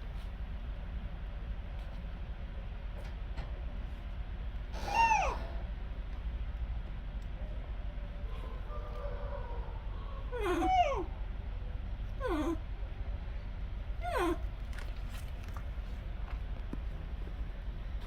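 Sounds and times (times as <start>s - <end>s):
monkey giving high calls: 4.8s - 5.6s.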